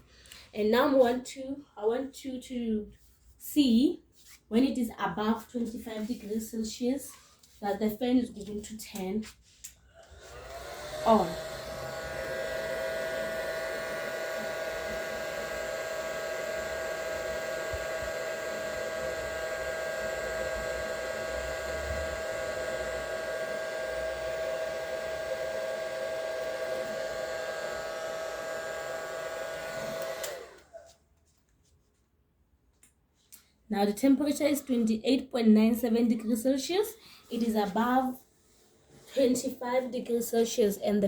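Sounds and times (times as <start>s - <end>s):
hair dryer running: 9.9s - 31.0s.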